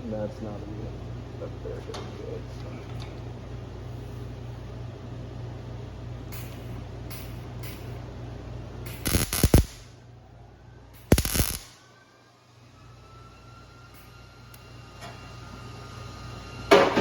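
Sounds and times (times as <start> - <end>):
steady low hum: 0.0 - 17.0
welding arc hissing crackles: 6.3 - 8.0, 8.8 - 10.0, 11.0 - 11.8.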